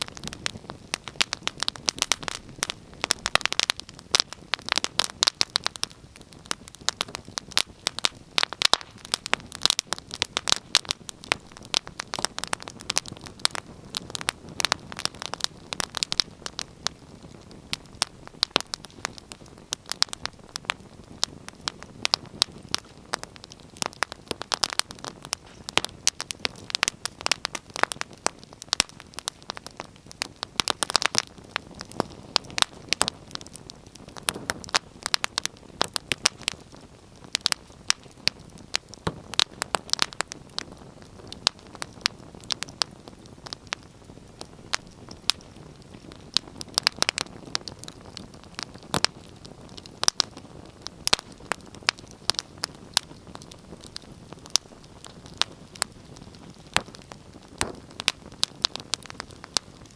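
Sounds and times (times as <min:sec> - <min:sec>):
soft hiss of burning: 0:00.0 - 0:59.9
wood fire pops and snaps: 0:00.0 - 0:59.9.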